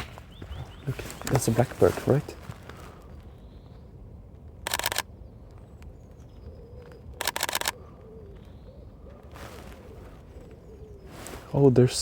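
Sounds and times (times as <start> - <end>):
camera shutter bursts: 4.6 - 5.1, 7.2 - 7.8.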